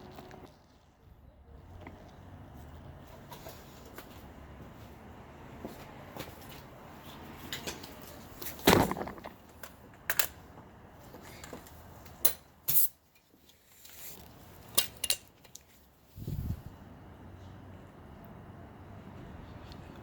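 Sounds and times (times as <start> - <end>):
metal tools clinking and knocking: 14.7 - 15.6.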